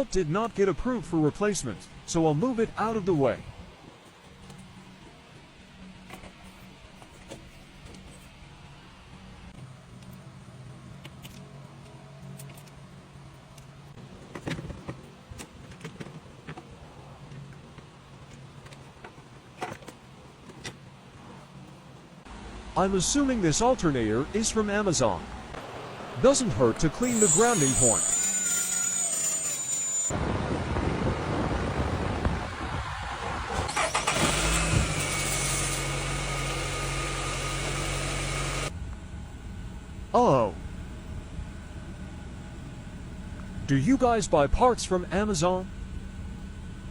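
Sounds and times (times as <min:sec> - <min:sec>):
steady low hum: 0:00.0 - 0:28.0, 0:35.9 - 0:46.9
car engine cranking and starting: 0:33.4 - 0:38.7.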